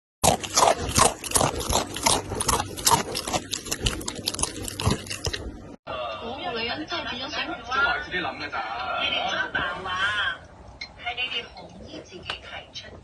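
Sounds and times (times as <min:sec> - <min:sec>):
pet animal crackling sounds: 0:00.2 - 0:05.5.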